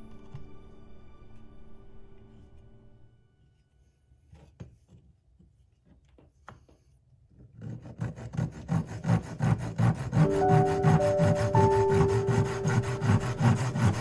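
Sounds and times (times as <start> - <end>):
saw cutting through wood: 7.6 - 14.0
soft sustained music notes: 10.2 - 14.0.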